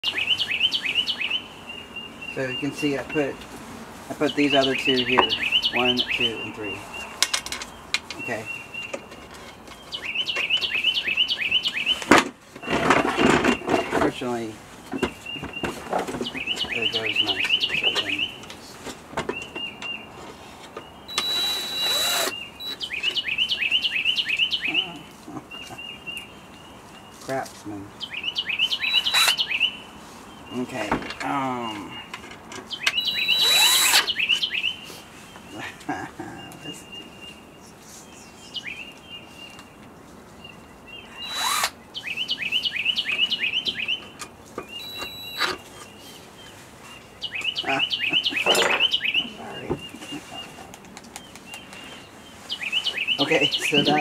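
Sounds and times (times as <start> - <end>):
bird chirping: 0.0 - 54.0
power drill running: 21.1 - 22.8, 33.2 - 34.0, 41.2 - 41.7.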